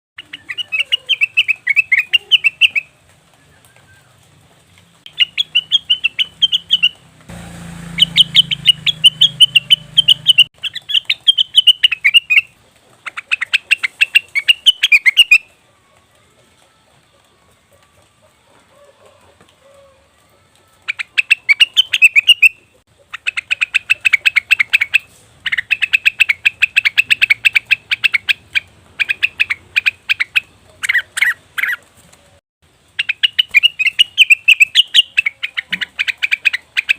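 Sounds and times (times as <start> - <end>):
bird chattering calls: 0.2 - 2.9, 5.1 - 7.0, 8.0 - 15.5, 20.9 - 31.8, 33.0 - 36.9.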